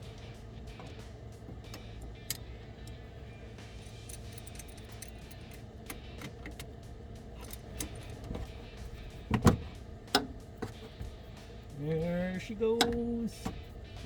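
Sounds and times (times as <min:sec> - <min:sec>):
steady low hum: 0:00.0 - 0:14.0
metallic clinks of hand tools: 0:03.8 - 0:05.6.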